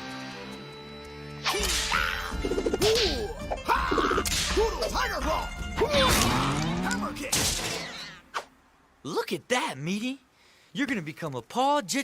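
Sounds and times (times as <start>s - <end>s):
grunting yells: 5.8s - 7.2s.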